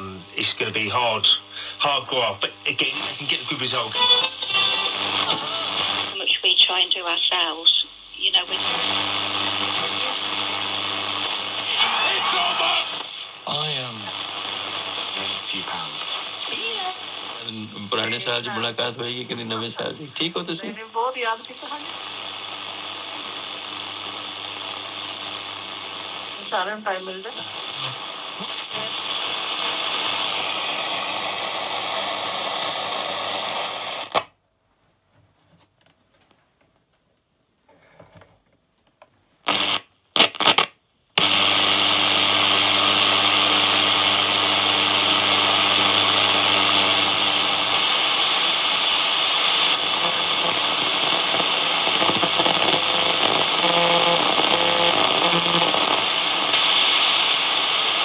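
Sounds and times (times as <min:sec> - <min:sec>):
radio tuning noise bursts: 0:00.0 - 0:34.2, 0:39.5 - 0:58.0
radio static hiss: 0:00.0 - 0:34.3, 0:39.4 - 0:58.0
faint tones from weak station: 0:41.2 - 0:58.0.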